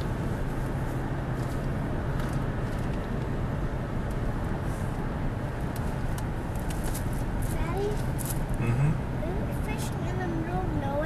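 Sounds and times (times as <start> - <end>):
moving vehicle rumble and hiss: 0.0 - 11.0.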